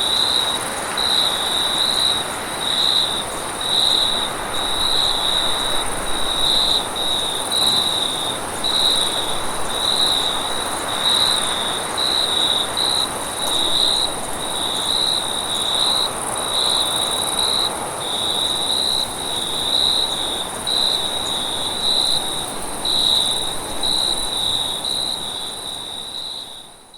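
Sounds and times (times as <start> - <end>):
crickets chirping: 0.0 - 26.9.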